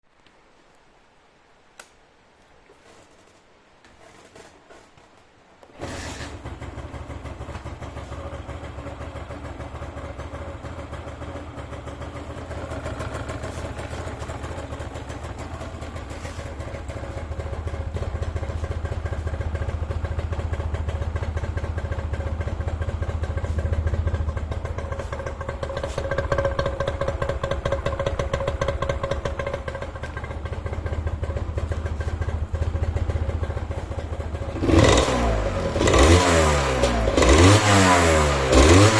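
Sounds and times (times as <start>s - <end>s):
motorcycle engine starting and idling: 4.0s - 38.9s.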